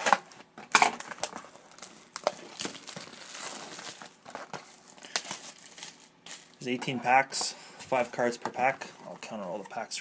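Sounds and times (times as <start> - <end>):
plastic shrink-wrap crinkling: 0.7 - 6.8.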